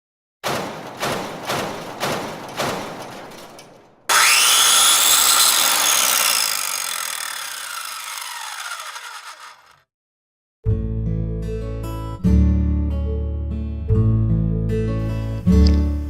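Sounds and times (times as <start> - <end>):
knocks: 0.4 - 4.2
power tool motor whine: 4.1 - 9.8.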